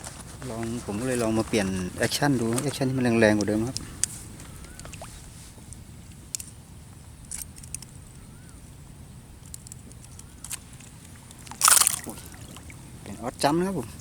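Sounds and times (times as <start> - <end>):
wind rumble: 0.0 - 14.0
fishing reel clicks and taps: 9.4 - 10.6.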